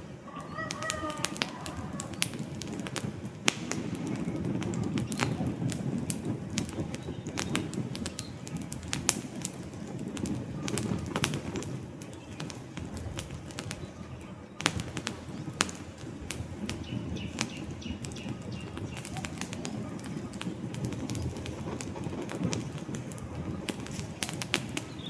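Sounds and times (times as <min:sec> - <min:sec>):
fire crackling and popping: 0:00.0 - 0:25.0
flames rumbling: 0:00.0 - 0:25.0.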